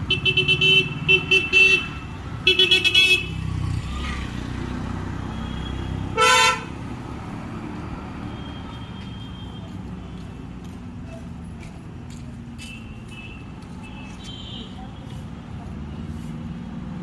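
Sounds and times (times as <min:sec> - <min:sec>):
passing road traffic rumble: 0:00.0 - 0:17.0
vehicle horn toot: 0:05.5 - 0:06.8.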